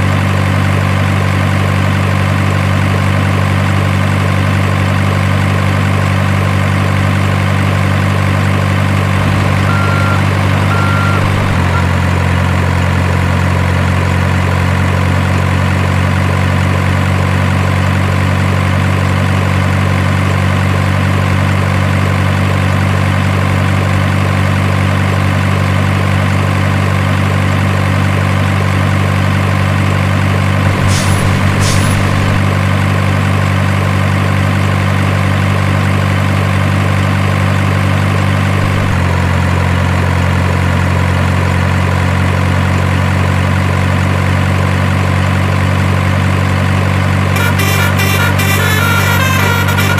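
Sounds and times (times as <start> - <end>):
truck diesel engine idling: 0.0 - 49.9
short high beeps: 9.2 - 12.1, 30.7 - 32.6.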